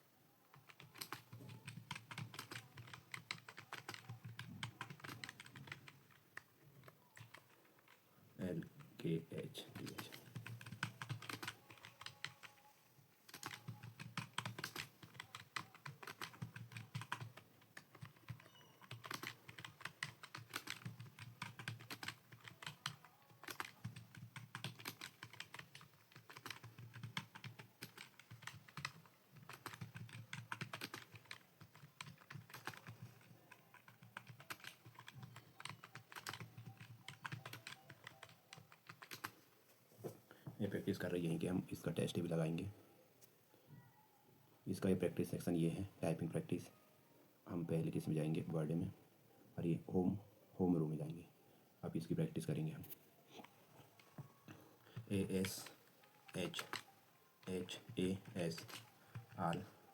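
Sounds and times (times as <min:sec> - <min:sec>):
typing on computer keyboard: 0:00.5 - 0:08.0, 0:09.7 - 0:12.6, 0:13.2 - 0:39.5, 0:53.9 - 0:59.9.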